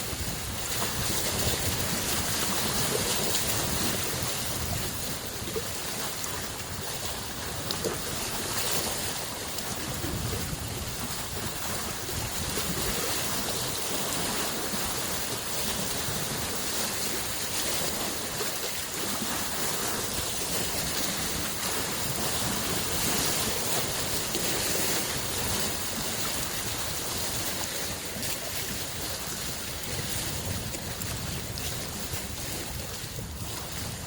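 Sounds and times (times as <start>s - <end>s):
lake waves washing against shore: 0.0s - 34.0s.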